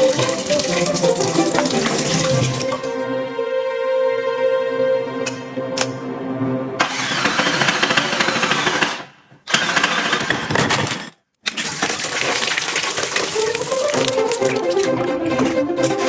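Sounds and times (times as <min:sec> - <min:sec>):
music: 0:00.0 - 0:07.0, 0:13.3 - 0:16.0
demolition hammer running: 0:06.8 - 0:11.1.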